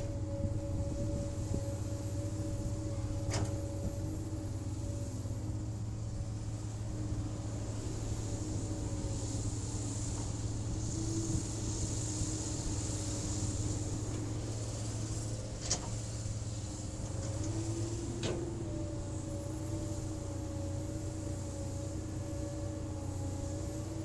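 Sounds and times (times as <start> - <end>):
excavator diesel engine rumble: 0.0 - 24.0.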